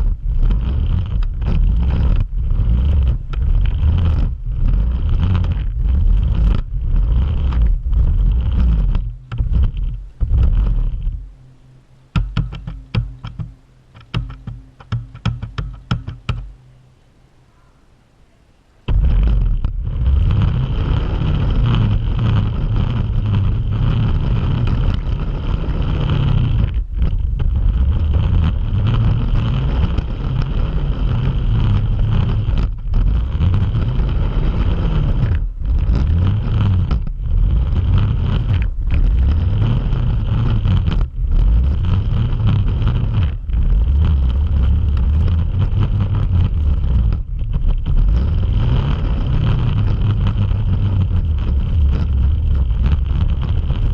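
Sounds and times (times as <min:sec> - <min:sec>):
remote control car motor rumble: 0:00.0 - 0:11.3, 0:18.9 - 0:53.9.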